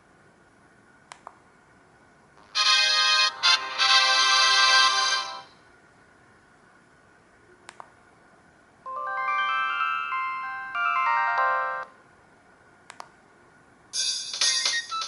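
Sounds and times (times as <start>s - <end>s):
single clicks: 1.1s - 1.4s, 7.7s - 8.0s, 12.9s - 13.2s
electronic ringtone melody: 8.9s - 11.9s.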